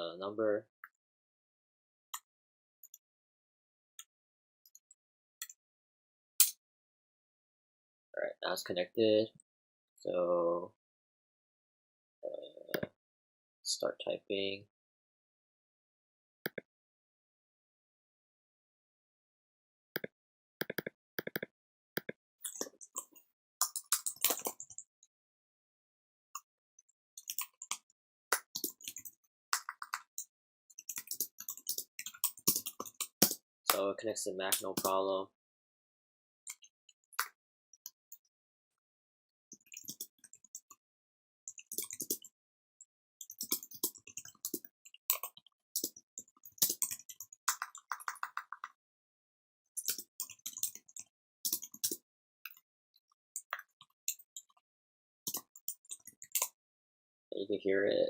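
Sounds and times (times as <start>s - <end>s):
keyboard typing: 20.0s - 22.7s, 28.4s - 30.2s, 30.8s - 33.4s, 41.5s - 42.3s, 43.2s - 48.7s, 49.8s - 52.0s.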